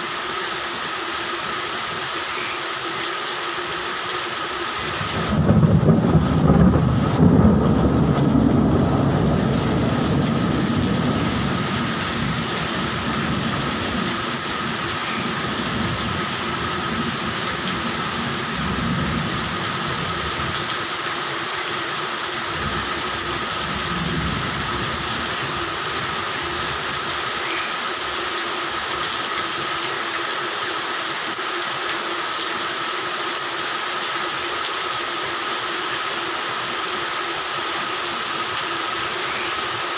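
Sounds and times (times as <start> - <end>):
steady rain: 0.0 - 39.9
thunder rumbling: 5.0 - 20.6, 22.6 - 27.0.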